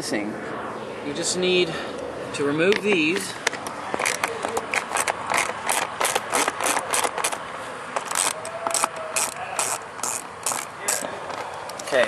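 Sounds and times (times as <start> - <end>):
ratchet wrench clicking: 4.0 - 7.4, 8.0 - 12.0.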